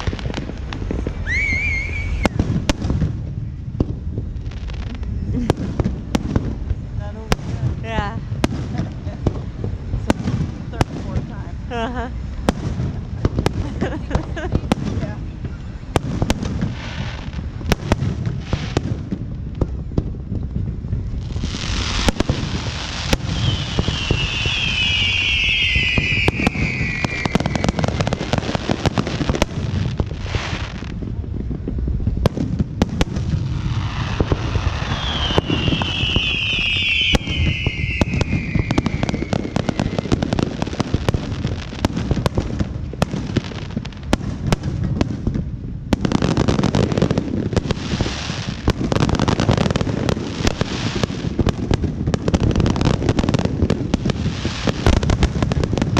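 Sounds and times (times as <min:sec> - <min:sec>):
fireworks crackling and banging: 0:00.0 - 0:55.9
falling firework whistle: 0:01.0 - 0:02.8, 0:21.9 - 0:29.0, 0:33.9 - 0:40.8.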